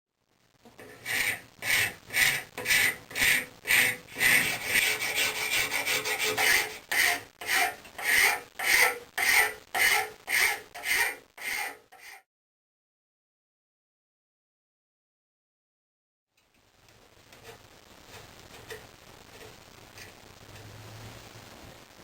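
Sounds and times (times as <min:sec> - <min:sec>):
hand file strokes: 0:00.8 - 0:12.2.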